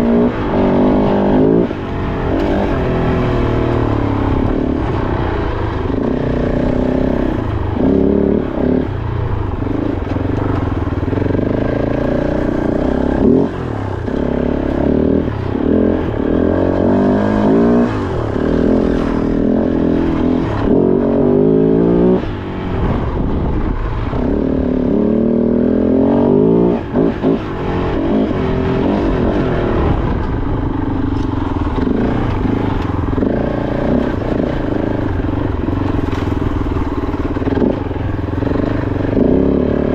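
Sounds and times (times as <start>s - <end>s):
motorcycle engine revving: 0.0s - 39.9s
bike and rocks clattering: 35.8s - 37.8s.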